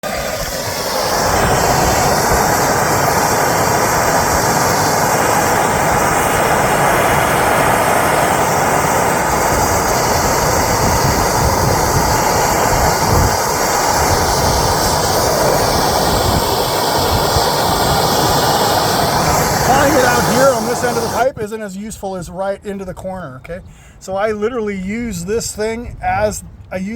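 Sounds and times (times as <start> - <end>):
torch flame roaring: 0.0 - 21.3.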